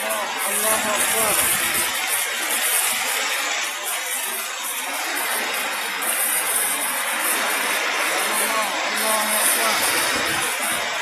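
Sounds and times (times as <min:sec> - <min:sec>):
heavy rain in strong wind: 0:00.0 - 0:11.0.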